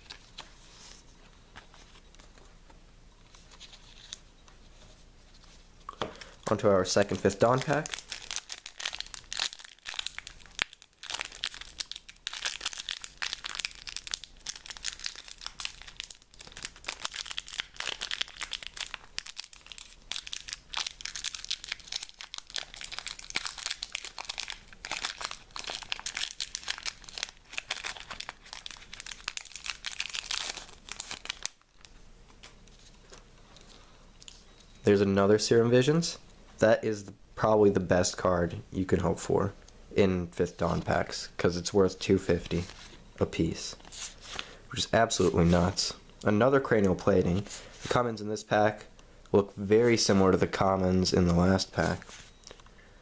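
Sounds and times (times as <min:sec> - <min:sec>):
wrapper crinkling and tearing: 0:07.0 - 0:31.9.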